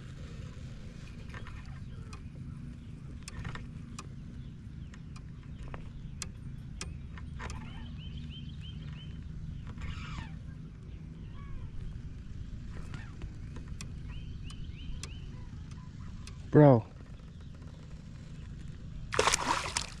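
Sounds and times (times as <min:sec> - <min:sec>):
light clicks: 0:01.2 - 0:07.8
bird chirping: 0:04.2 - 0:20.0.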